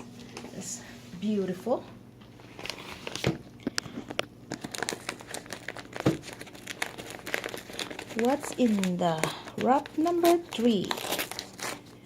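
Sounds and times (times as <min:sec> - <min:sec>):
packing paper crinkling: 0:02.4 - 0:12.0.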